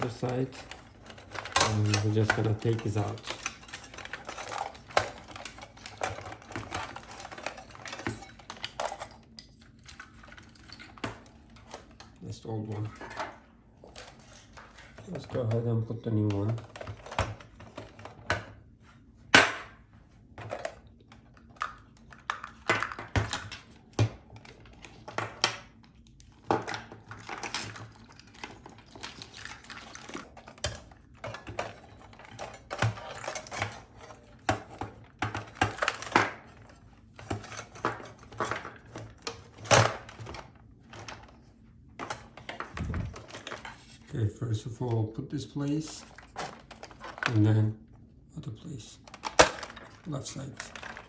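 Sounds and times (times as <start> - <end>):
plastic clicks and rattles: 0.0 - 12.2, 20.4 - 41.4, 42.0 - 43.8, 49.0 - 51.0.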